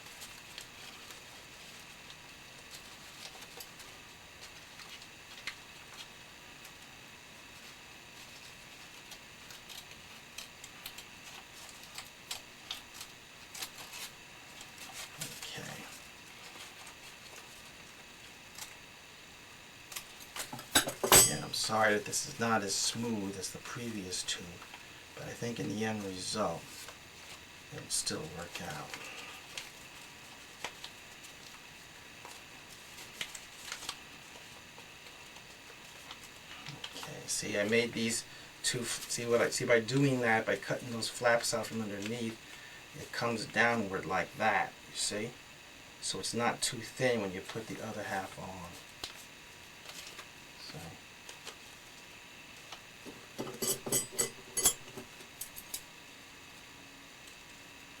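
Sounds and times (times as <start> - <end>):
paper rustling: 0.0 - 6.9, 32.2 - 37.1, 48.7 - 50.3
paper rustling and tool clicks: 0.0 - 6.9, 7.5 - 18.8, 25.5 - 31.6, 32.2 - 37.1, 47.4 - 50.3.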